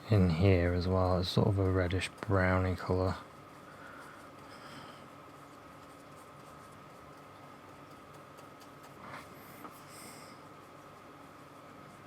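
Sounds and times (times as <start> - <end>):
paintbrush scratching on canvas: 0.3 - 4.5, 5.1 - 9.9.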